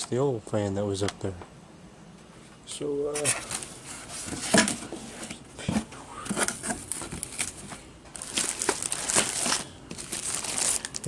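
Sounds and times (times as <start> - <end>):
packaging rustling and crinkling: 3.2 - 11.0.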